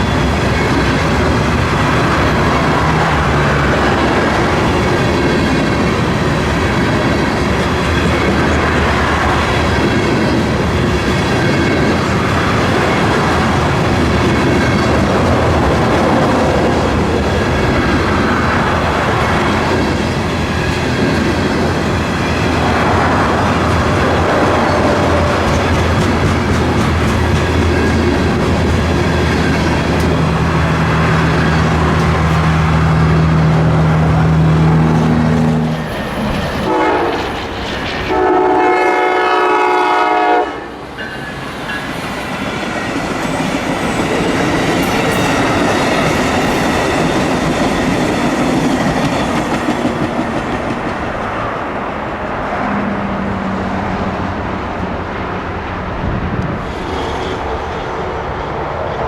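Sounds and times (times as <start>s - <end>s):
train wheels clickety-clack: 0.0s - 39.3s, 39.9s - 53.3s
diesel locomotive engine drone: 0.0s - 59.0s
locomotive horn blast: 36.6s - 37.3s, 38.1s - 40.8s.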